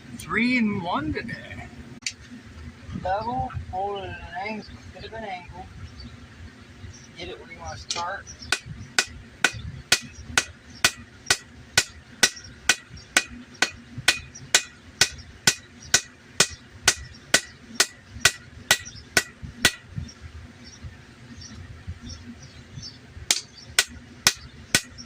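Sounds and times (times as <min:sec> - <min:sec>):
hammer striking steel on anvil: 0:08.5 - 0:19.9, 0:23.3 - 0:25.0.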